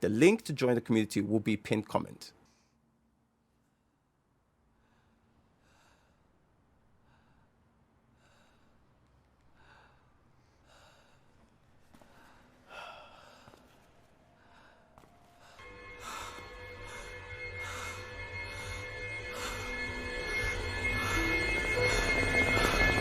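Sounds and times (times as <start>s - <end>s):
heavy breathing: 7.0s - 23.0s.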